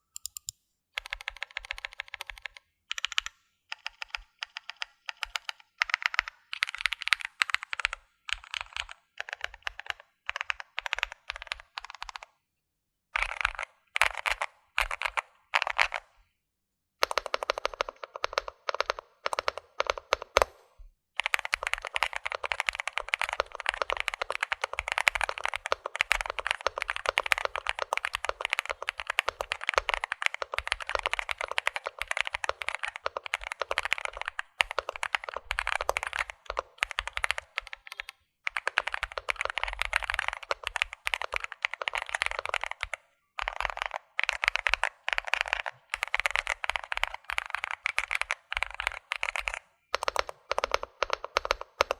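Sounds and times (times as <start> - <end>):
mechanical keyboard typing: 0.2 - 12.3, 13.2 - 16.1, 17.0 - 51.9.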